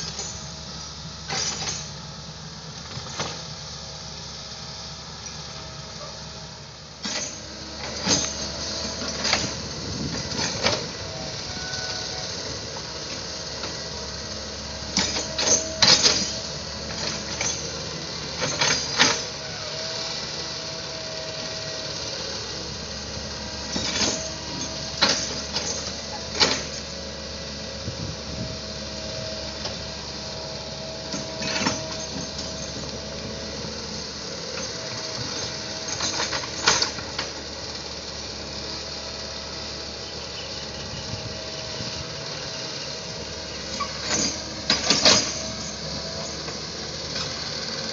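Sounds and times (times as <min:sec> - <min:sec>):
excavator clanks and knocks: 0:00.0 - 0:00.6, 0:01.2 - 0:02.1, 0:02.8 - 0:03.6, 0:07.0 - 0:19.8, 0:23.2 - 0:27.2, 0:27.8 - 0:30.4, 0:31.0 - 0:38.4, 0:41.0 - 0:47.9
excavator running with whine: 0:00.0 - 0:47.9.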